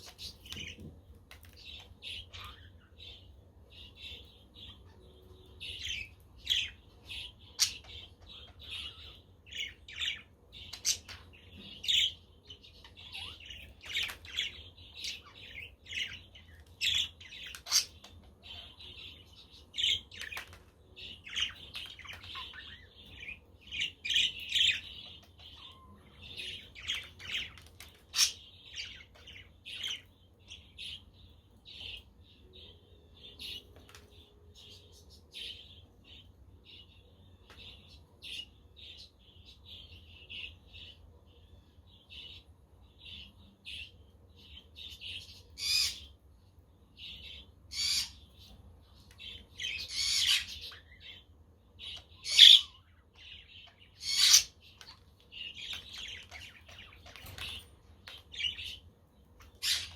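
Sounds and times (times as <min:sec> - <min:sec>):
budgerigars chattering: 0:49.6 - 0:50.8, 0:51.9 - 0:52.8, 0:53.6 - 0:57.6, 0:59.4 - 0:59.9.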